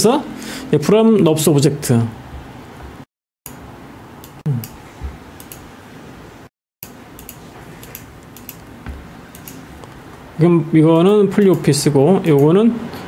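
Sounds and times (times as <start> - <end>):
mouse and keyboard clicks: 9.3 - 10.0.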